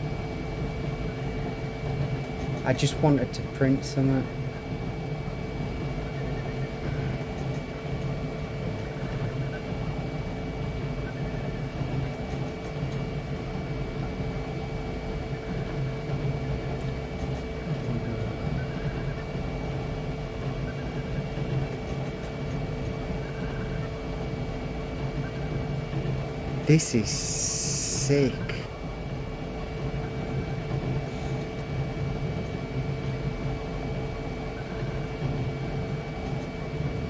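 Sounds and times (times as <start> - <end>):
printer machine hum: 26.7 - 28.7.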